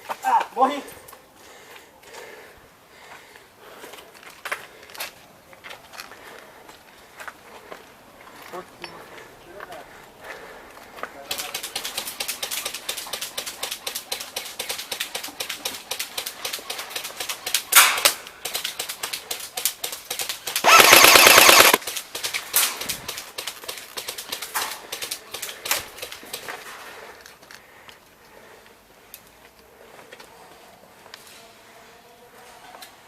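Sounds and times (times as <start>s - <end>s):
airsoft guns firing: 11.3s - 19.4s, 20.1s - 25.5s
full-auto burst of fire: 20.6s - 21.8s.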